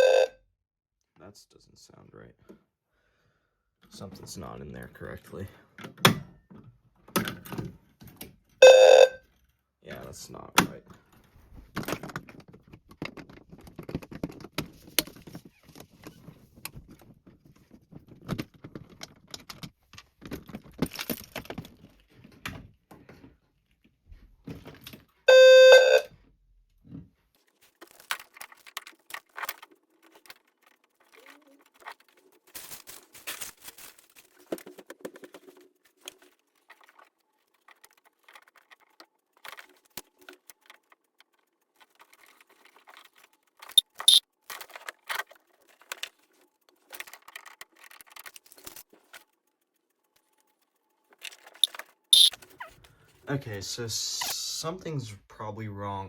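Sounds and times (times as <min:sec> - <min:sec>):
fire alarm sounder low tone: 0:00.0 - 0:00.3, 0:08.6 - 0:09.2, 0:25.3 - 0:26.1
clicks and rattles from handling: 0:11.7 - 0:23.3.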